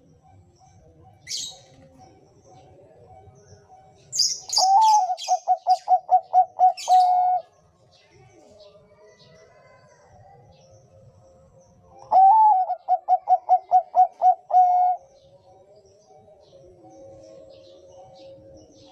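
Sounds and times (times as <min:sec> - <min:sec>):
faint background bird calls: 0:00.0 - 0:18.9
dove cooing: 0:04.4 - 0:07.5, 0:12.0 - 0:15.2.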